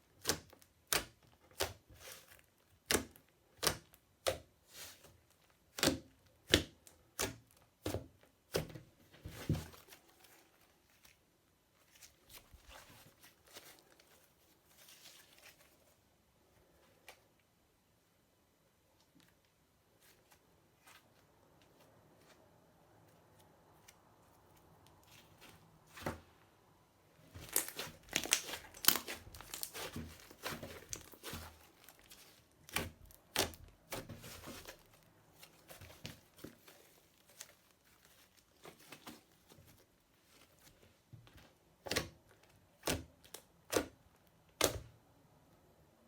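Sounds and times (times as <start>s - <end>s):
slime crackling and popping: 27.3s - 34.1s.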